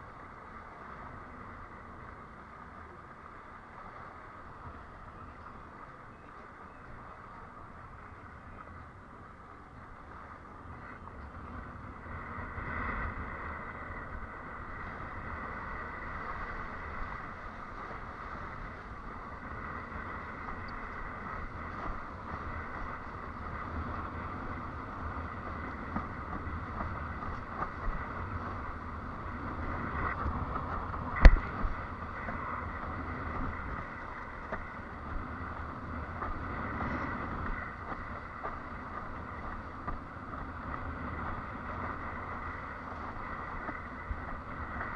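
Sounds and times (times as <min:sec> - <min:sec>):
wind buffeting microphone: 0:00.0 - 0:44.9
water rushing: 0:13.6 - 0:44.9.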